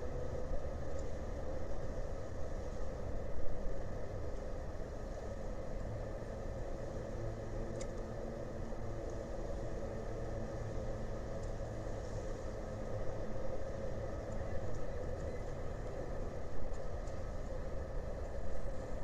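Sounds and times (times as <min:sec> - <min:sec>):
faint hum: 0:00.0 - 0:19.0
low engine drone: 0:00.0 - 0:19.0
faint tick: 0:07.7 - 0:08.1, 0:11.4 - 0:11.6, 0:14.3 - 0:15.4, 0:16.7 - 0:17.2.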